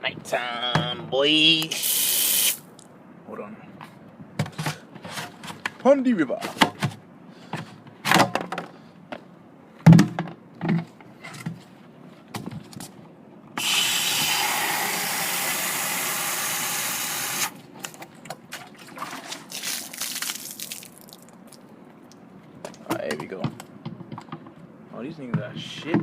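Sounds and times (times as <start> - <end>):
loud thump and knocks: 9.8 - 10.8
water tap running: 13.6 - 17.5.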